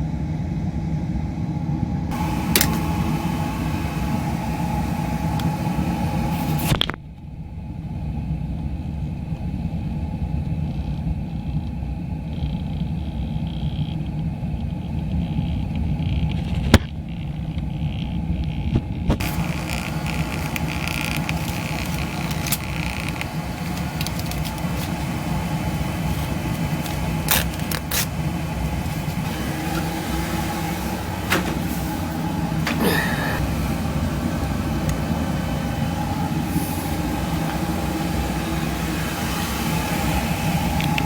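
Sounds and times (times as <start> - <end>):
oil burner rumbling: 0.0 - 41.0.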